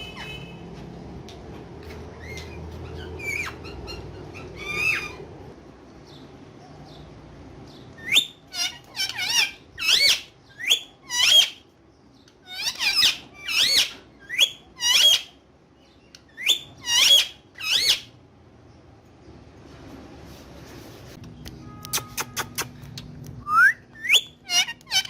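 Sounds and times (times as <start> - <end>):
parrot screeching: 2.1 - 5.3, 8.0 - 11.6, 12.4 - 15.4, 16.3 - 18.1, 24.0 - 25.0.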